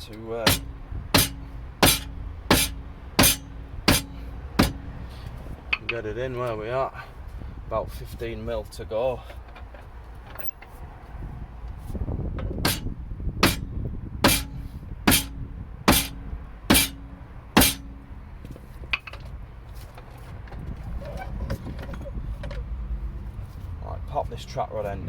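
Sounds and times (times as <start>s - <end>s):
mallet blows with metallic ring: 0.5s - 5.2s, 12.6s - 18.3s.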